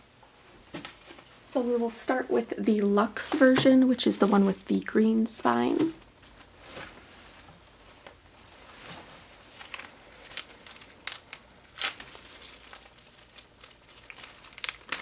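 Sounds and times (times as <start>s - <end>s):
plastic wrap crinkling and tearing: 8.8s - 15.0s.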